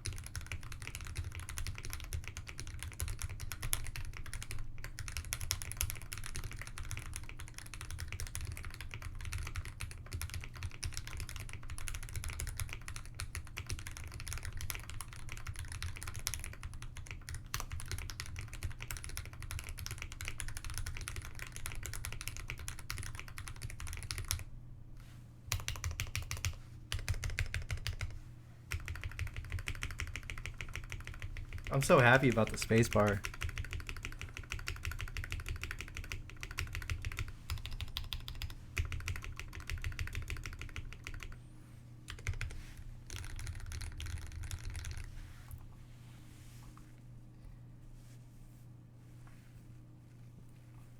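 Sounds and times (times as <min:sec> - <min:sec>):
mechanical keyboard typing: 0:00.0 - 0:24.4, 0:25.5 - 0:28.1, 0:28.7 - 0:41.4, 0:42.1 - 0:45.1.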